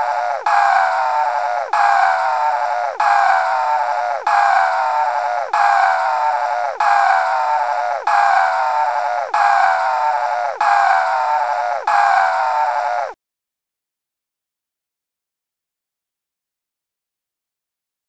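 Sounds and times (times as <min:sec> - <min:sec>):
cartoon scream: 0:00.0 - 0:13.2.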